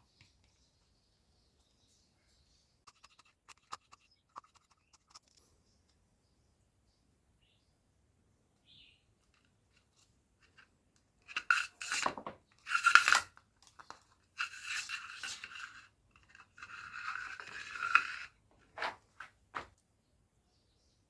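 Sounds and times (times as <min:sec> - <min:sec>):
scraping: 0:11.3 - 0:19.7.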